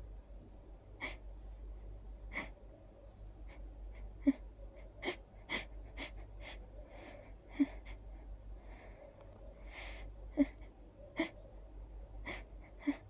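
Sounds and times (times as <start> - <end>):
wheezy breaths and gasps: 2.3 - 2.6, 3.5 - 11.4, 12.2 - 13.0.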